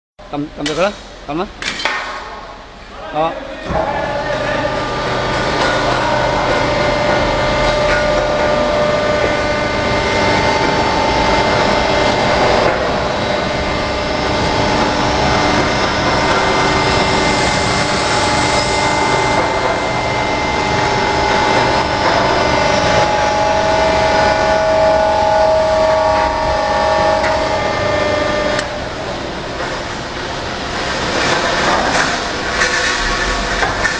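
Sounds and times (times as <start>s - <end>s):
hydraulic drive whining: 3.6s - 30.6s
hydraulic baler machine noise: 3.6s - 33.9s.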